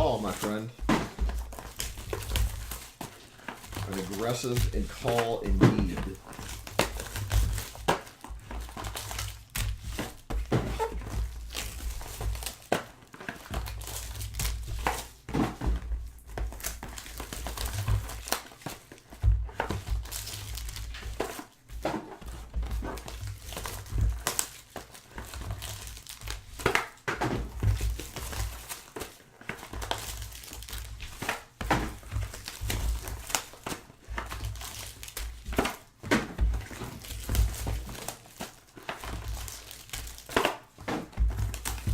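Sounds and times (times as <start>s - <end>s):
plastic wrapping crinkling and tearing: 0.0s - 41.9s.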